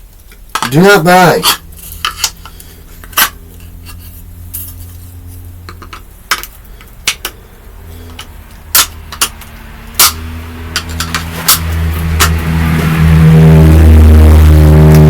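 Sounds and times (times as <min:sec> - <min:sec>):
steady low hum: 0:00.0 - 0:15.0
plastic parts clicking and knocking: 0:05.7 - 0:07.4.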